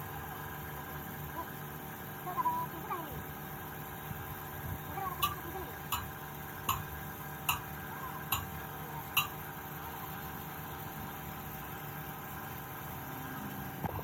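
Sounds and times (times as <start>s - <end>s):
steady low hum: 0.0s - 14.0s
sharp taps: 6.7s - 6.9s, 7.5s - 7.7s.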